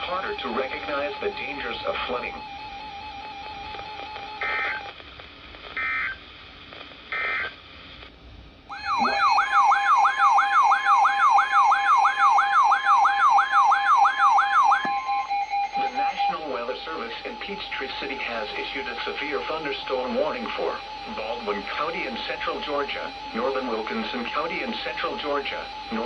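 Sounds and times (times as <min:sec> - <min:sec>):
digital data tone bursts: 0:08.7 - 0:16.4
electronic alert tone sweeps: 0:08.7 - 0:16.4.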